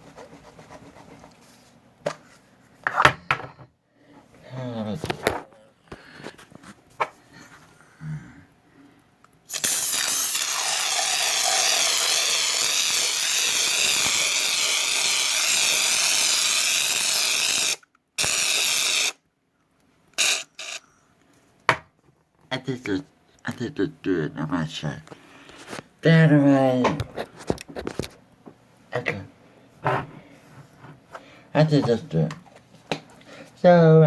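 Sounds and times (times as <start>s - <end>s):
aerosol shaving cream spraying: 9.5s - 19.2s, 20.2s - 20.8s.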